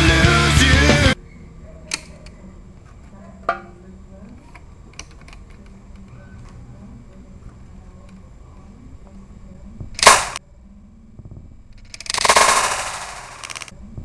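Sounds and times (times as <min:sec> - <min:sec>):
sharp shot-like crack: 0:10.0 - 0:10.4, 0:12.0 - 0:13.7.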